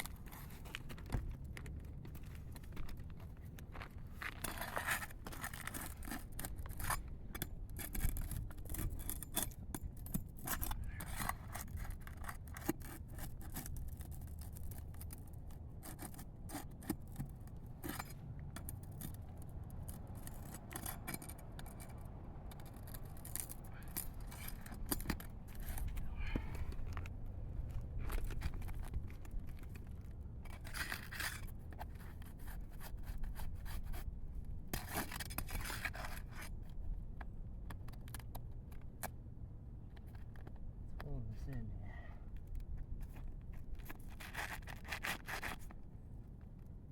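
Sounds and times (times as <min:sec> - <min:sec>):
metal tool scraping shingles: 0:04.2 - 0:26.8, 0:30.4 - 0:34.1, 0:34.7 - 0:36.6, 0:43.8 - 0:45.7.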